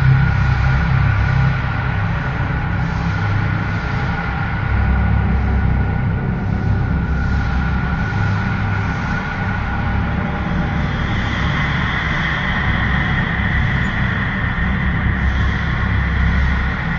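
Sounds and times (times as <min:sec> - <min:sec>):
low rumble: 0:00.0 - 0:16.9.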